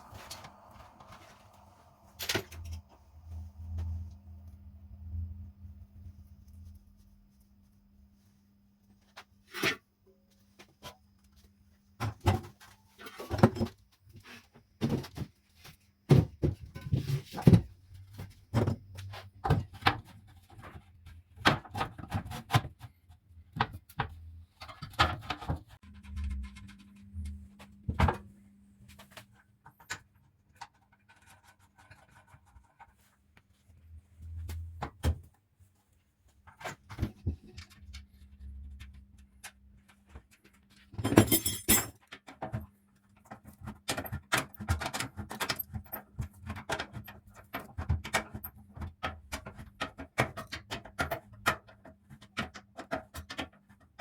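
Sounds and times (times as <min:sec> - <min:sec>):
metal fan parts clinking: 0:41.0 - 0:42.2.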